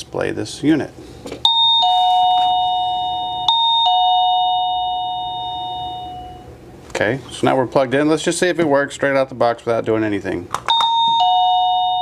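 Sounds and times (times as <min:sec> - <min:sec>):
doorbell ding-dong chime: 0:01.5 - 0:06.5, 0:10.7 - 0:12.0.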